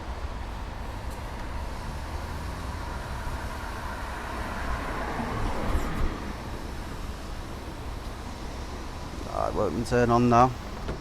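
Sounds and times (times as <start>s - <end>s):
road traffic rumble: 0.0s - 11.0s
vehicle passing: 1.6s - 7.2s.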